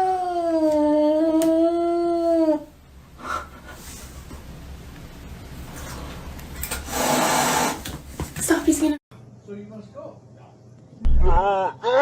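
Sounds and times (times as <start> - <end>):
dog howling: 11.4 - 12.0.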